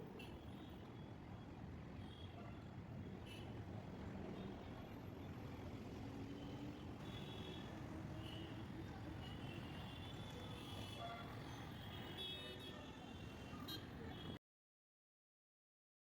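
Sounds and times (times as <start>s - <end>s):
road traffic noise: 2.7s - 14.4s.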